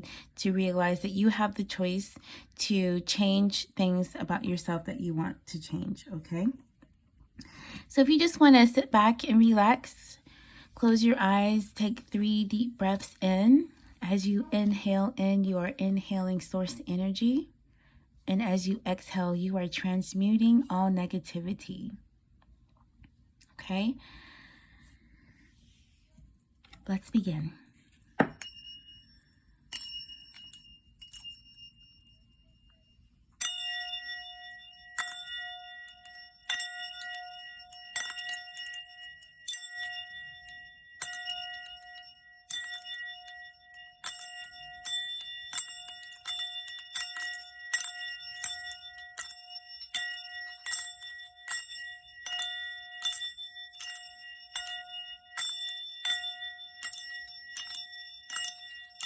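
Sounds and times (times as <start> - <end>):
bright bell strikes: 27.7 - 59.0
singing bowl ringing: 28.2 - 59.0.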